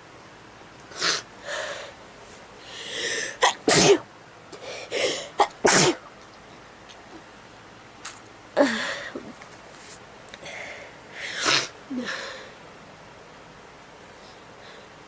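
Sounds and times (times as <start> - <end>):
person sneezing: 3.1 - 4.0, 4.9 - 6.0, 11.3 - 12.2.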